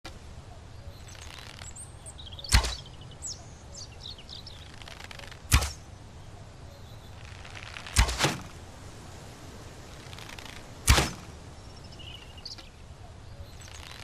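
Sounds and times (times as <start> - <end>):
birds chirping faintly: 0.0 - 14.0
bow shot snapping: 2.5 - 2.9, 4.8 - 5.8, 7.8 - 8.6, 10.8 - 11.3.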